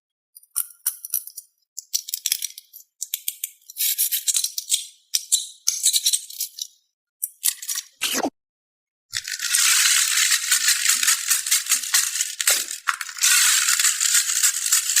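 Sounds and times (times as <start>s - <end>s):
plastic balls clattering: 9.2s - 15.0s.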